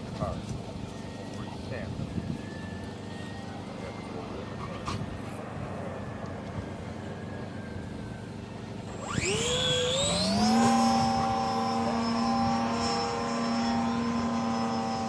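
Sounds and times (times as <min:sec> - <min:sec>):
electric motor whine: 0:00.4 - 0:15.0.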